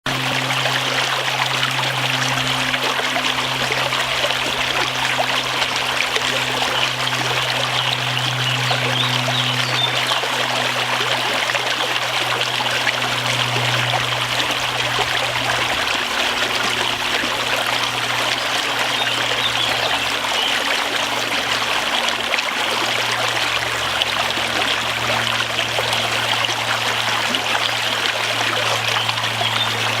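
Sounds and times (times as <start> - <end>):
low hum: 0.1 - 30.0
stream babbling over stones: 0.1 - 30.0.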